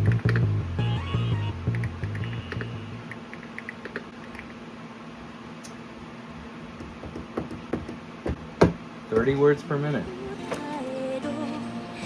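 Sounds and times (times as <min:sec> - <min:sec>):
background music: 0:10.1 - 0:12.0.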